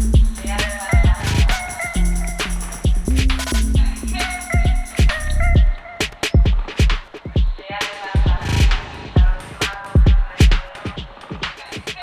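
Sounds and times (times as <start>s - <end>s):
synth chords: 0.0s - 5.8s
electronic dance music: 0.0s - 12.0s
hi-hat strokes: 0.0s - 12.0s
kick drum: 0.0s - 12.0s.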